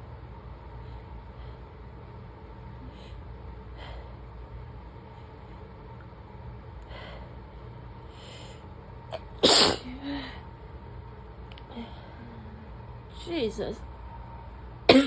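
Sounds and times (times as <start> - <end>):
person sneezing: 9.4 - 10.0.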